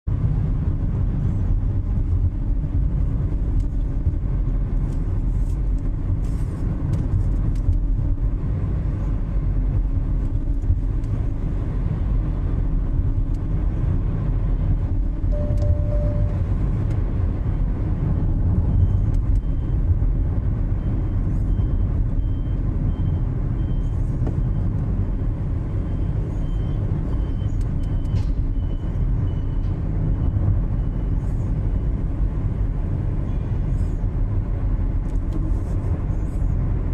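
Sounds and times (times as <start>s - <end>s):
vehicle engine low rumble: 0.0s - 36.9s
faint high broken tone: 15.3s - 16.4s.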